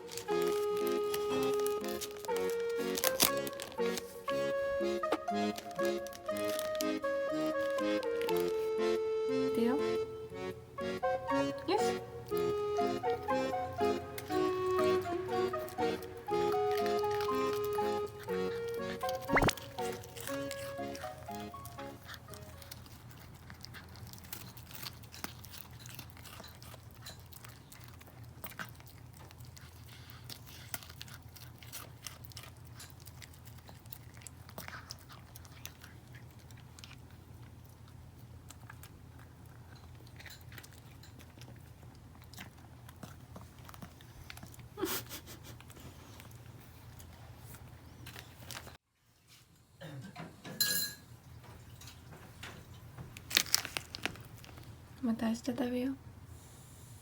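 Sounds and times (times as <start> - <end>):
dog crunching food: 0.0 - 8.9, 9.8 - 48.8, 51.6 - 55.0
sharp sound: 19.3 - 19.6.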